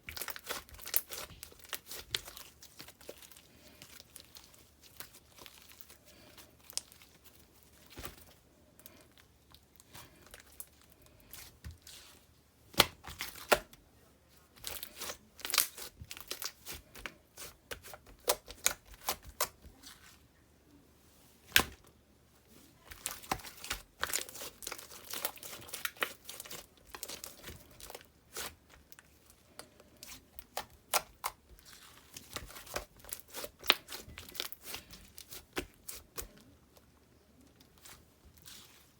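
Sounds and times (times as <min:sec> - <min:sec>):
slime crackling and popping: 0:00.0 - 0:05.8.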